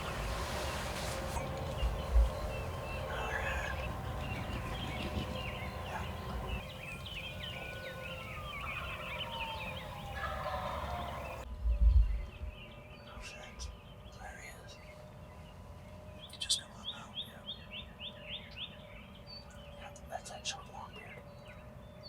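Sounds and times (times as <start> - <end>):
turkey gobbling: 0.0 - 11.4
songbirds chirping: 0.0 - 22.0.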